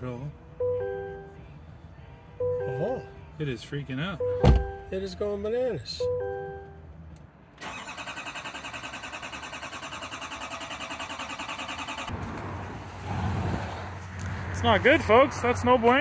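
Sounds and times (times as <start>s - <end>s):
diesel engine cranking: 7.6s - 12.4s.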